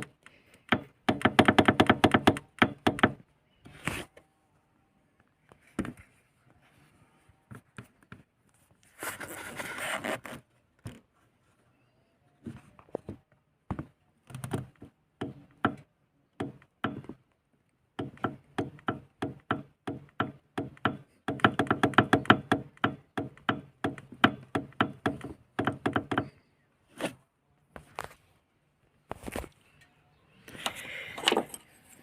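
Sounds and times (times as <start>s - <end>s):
knocks and taps on car dashboard: 0.7s - 3.2s, 14.5s - 15.8s, 16.4s - 17.2s, 18.0s - 26.3s.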